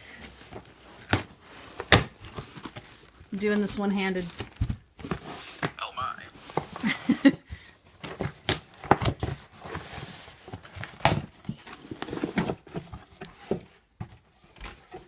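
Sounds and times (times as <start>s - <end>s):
cardboard box being opened: 8.9s - 13.8s.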